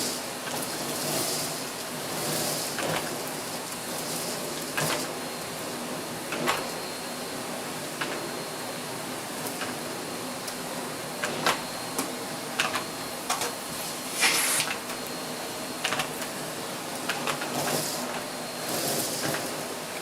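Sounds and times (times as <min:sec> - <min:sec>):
vacuum cleaner whining: 0:00.0 - 0:20.0
paper sucked up rushes: 0:13.8 - 0:14.8.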